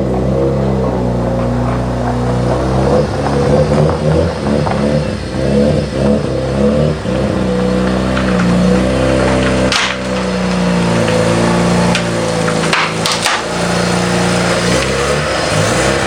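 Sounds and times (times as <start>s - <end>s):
rotary engine running: 0.0s - 16.0s.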